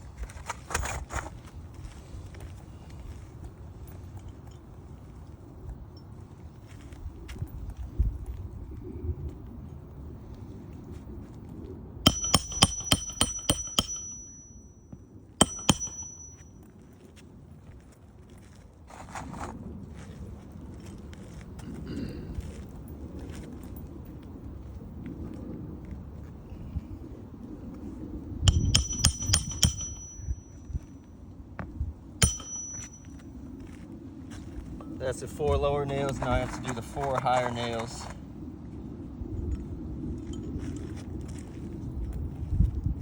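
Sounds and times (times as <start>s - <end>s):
hammer striking metal: 12.1s - 16.6s, 28.5s - 30.8s, 32.2s - 33.2s.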